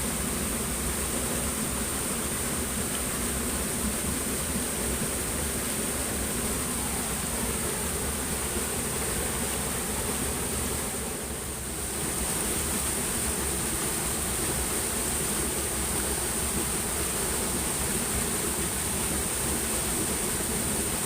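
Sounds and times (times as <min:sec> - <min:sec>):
high hiss: 0:00.0 - 0:21.0
stream water flowing: 0:00.0 - 0:21.0.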